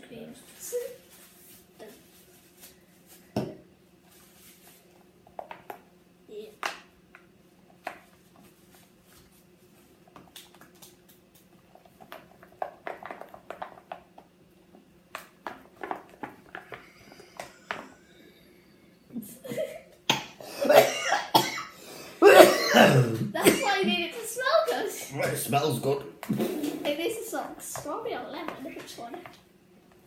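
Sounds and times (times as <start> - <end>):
person speaking: 22.8 - 29.2.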